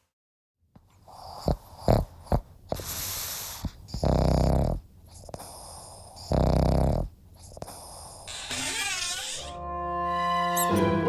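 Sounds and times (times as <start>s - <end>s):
dog making rasping sounds: 1.0s - 8.3s.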